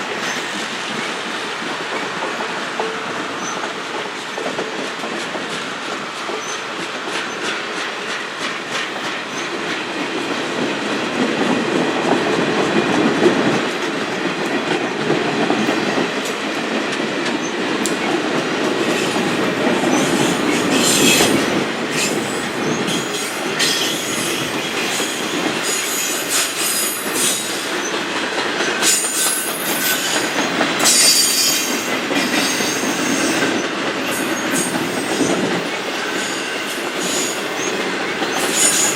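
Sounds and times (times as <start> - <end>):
train wheels clicking over rail joints: 0.0 - 38.9.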